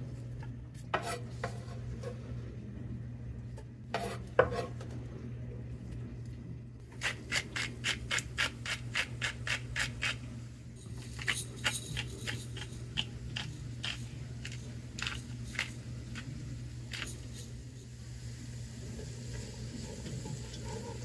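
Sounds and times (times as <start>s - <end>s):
steady low hum: 0.0s - 21.0s
utensil scraping kitchenware: 0.9s - 2.2s, 3.9s - 4.8s, 7.0s - 16.2s.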